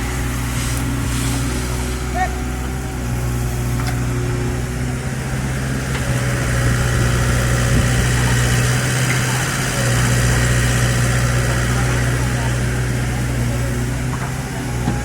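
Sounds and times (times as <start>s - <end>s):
excavator diesel engine hum: 0.0s - 15.0s.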